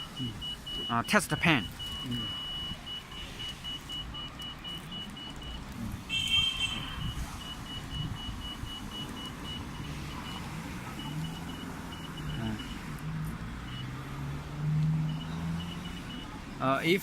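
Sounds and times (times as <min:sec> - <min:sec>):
multi-tone electronic beep: 0:00.0 - 0:12.9, 0:15.0 - 0:16.4.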